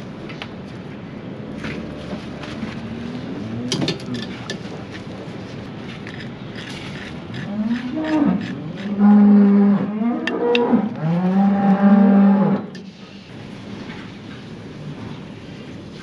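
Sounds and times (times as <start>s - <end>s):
cow mooing: 7.4s - 12.7s.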